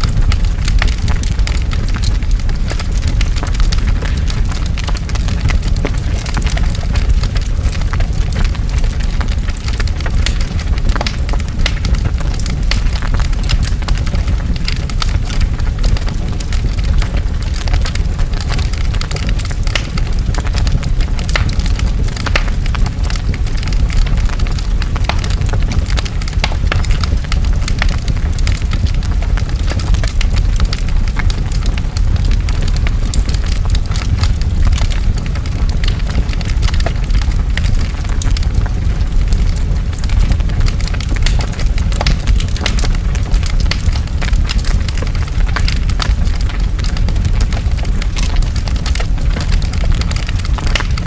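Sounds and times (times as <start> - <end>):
burning wood crackling and popping: 0.0 - 51.0
deep roar of flames: 0.0 - 51.0.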